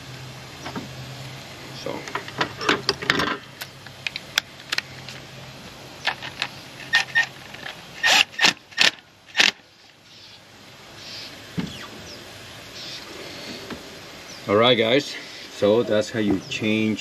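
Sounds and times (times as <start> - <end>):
low steady hum: 0.0 - 17.0.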